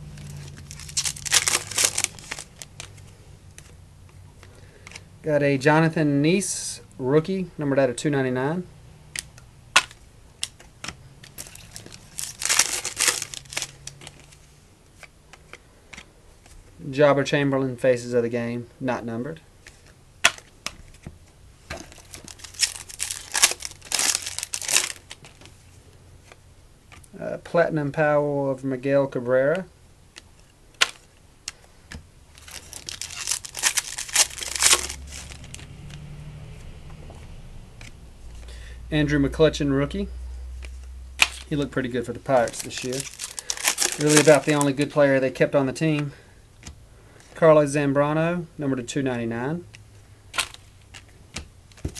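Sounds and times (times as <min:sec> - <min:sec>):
cards rustling: 0:00.0 - 0:05.1, 0:09.2 - 0:16.8, 0:19.6 - 0:27.2, 0:30.1 - 0:36.7, 0:40.5 - 0:47.4, 0:50.3 - 0:51.9
foil wrapper crinkling and tearing: 0:00.2 - 0:03.0, 0:11.2 - 0:14.4, 0:21.9 - 0:25.3, 0:32.3 - 0:35.6, 0:41.2 - 0:45.0
trading cards clicking: 0:30.2 - 0:36.0.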